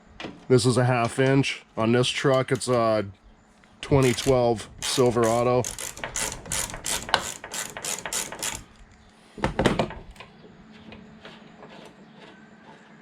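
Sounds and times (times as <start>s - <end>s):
ratchet wrench clicking: 3.8s - 8.8s.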